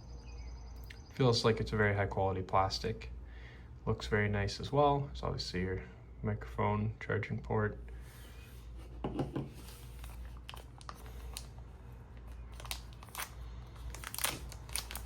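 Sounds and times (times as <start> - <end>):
packaging crinkling and rustling: 9.6 - 15.0.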